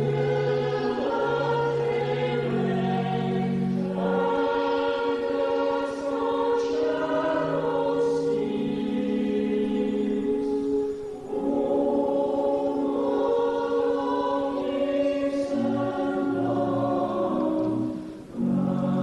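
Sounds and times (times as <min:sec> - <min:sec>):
church choir singing: 0:00.0 - 0:19.0.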